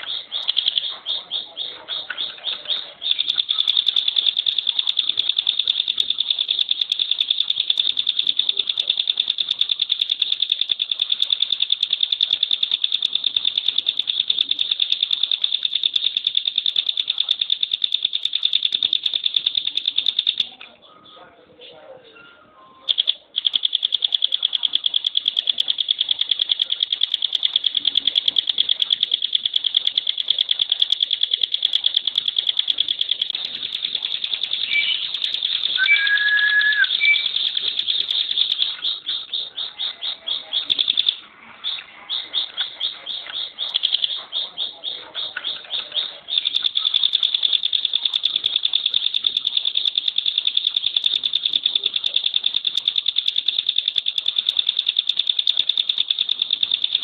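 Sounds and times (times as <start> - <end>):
bird trilling: 0.0 - 6.0, 22.2 - 48.4
bird chirps: 0.0 - 57.0
short whistle: 35.8 - 37.3.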